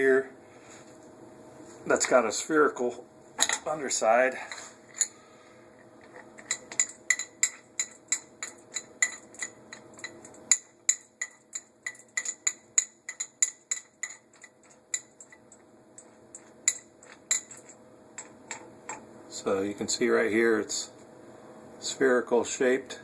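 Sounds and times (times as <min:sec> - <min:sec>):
faint hum: 0:00.0 - 0:23.0
metal parts clicking and clinking: 0:06.0 - 0:19.0.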